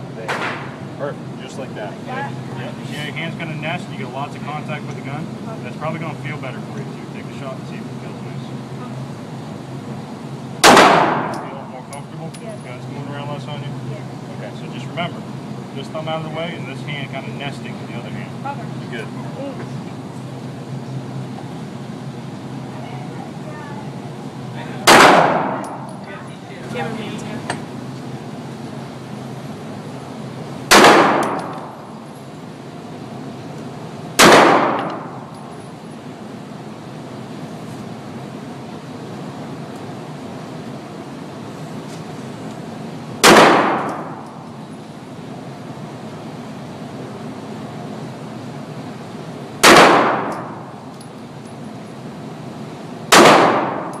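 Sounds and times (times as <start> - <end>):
handgun shots echoing: 10.6 - 11.5, 24.9 - 26.0, 30.7 - 31.8, 34.2 - 35.1, 43.2 - 44.3, 49.6 - 50.6, 53.1 - 54.0.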